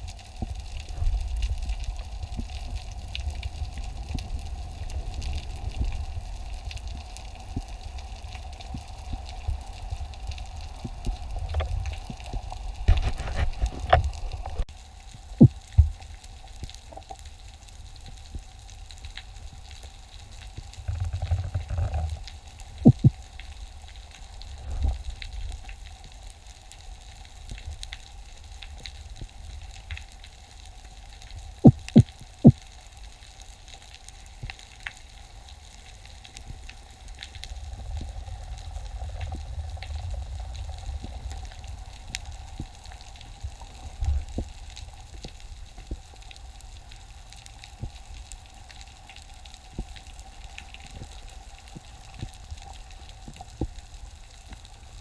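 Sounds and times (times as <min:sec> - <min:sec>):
low underwater rumble: 0:00.0 - 0:30.2, 0:34.1 - 0:55.0
underwater clicks crackling: 0:00.2 - 0:17.4, 0:18.0 - 0:26.2, 0:31.2 - 0:32.7.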